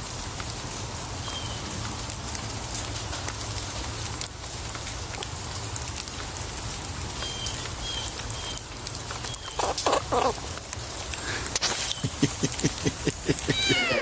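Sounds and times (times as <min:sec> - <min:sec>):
steady hiss: 0:00.0 - 0:14.0
animal short calls: 0:13.4 - 0:14.0.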